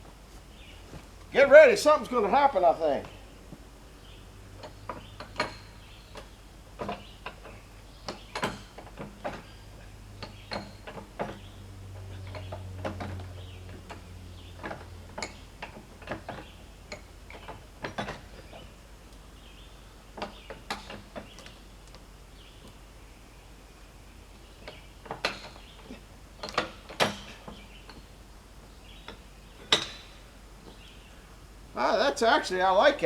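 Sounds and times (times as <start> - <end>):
knocks and clanks of log and metal: 4.5 - 18.8, 20.1 - 21.6, 24.3 - 28.1, 28.7 - 30.9.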